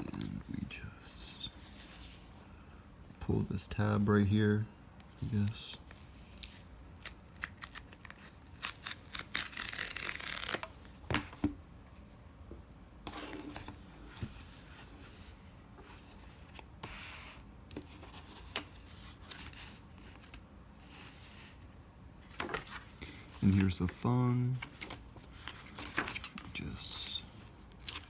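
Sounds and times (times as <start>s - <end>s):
cardboard tearing: 5.9s - 10.7s
cardboard rustling: 22.2s - 28.0s.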